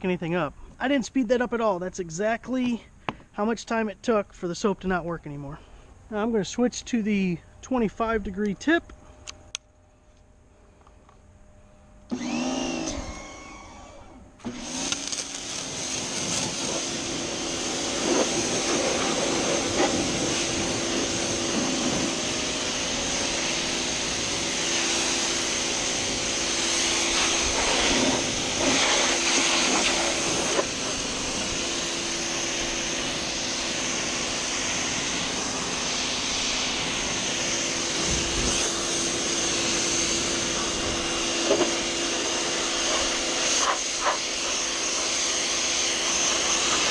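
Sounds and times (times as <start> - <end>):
pressure washer motor humming: 12.1 - 46.9
water jet hissing: 14.7 - 46.9.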